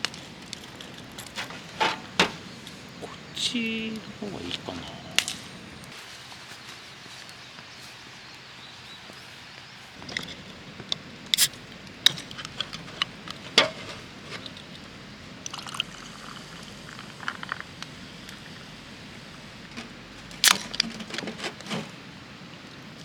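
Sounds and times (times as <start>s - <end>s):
campfire crackling and popping: 0.0s - 23.0s.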